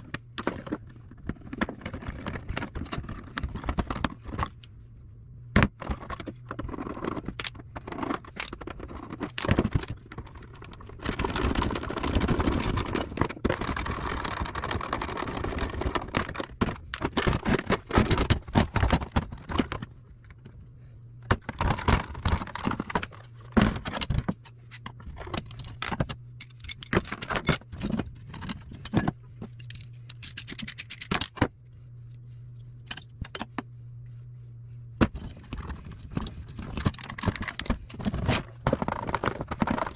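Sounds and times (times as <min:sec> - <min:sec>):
low hum: 0:24.4 - 0:39.9
metal parts clattering and scraping: 0:25.2 - 0:31.4, 0:32.8 - 0:33.2.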